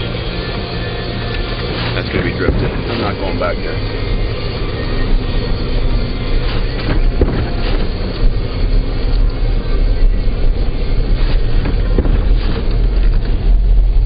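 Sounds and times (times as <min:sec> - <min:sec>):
car driving on snowy road: 0:00.0 - 0:14.0
knocks and bumps: 0:11.2 - 0:13.5.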